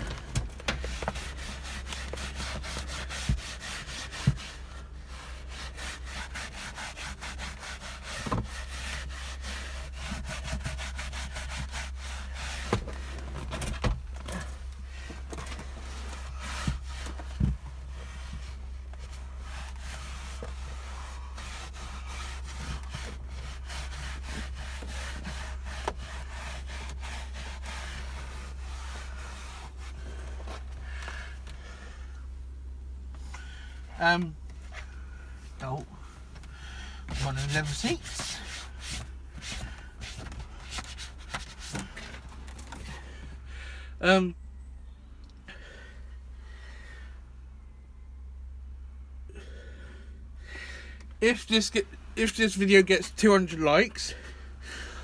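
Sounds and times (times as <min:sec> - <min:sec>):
steady low hum: 0:00.0 - 0:55.0
brush scrubbing carpet: 0:00.8 - 0:13.5, 0:15.7 - 0:31.0, 0:37.1 - 0:42.1.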